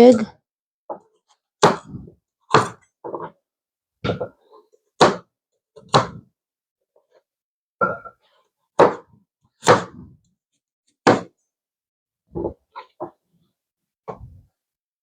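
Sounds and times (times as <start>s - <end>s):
knife chopping carrots on board: 1.6s - 3.3s, 5.0s - 6.2s, 8.8s - 10.2s, 11.0s - 11.3s.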